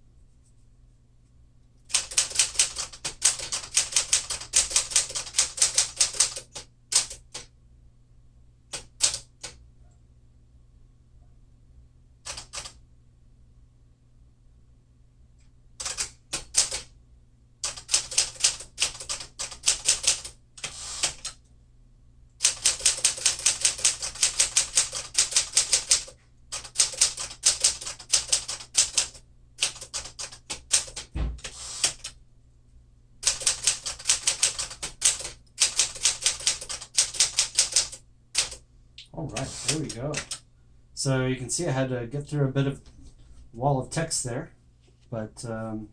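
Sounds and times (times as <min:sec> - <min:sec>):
heavy low thump: 0:31.1 - 0:31.5.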